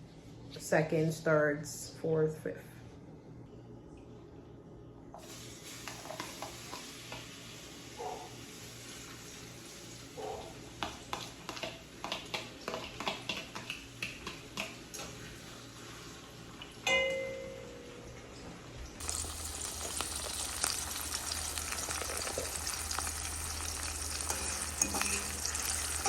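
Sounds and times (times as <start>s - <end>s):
utensils tapping and scraping dishes: 10.8s - 15.3s, 24.2s - 26.0s.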